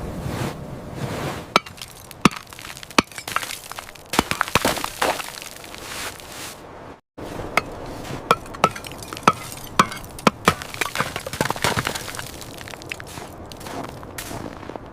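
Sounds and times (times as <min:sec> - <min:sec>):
ice chipping and cracking: 0:01.6 - 0:06.2, 0:07.6 - 0:14.0.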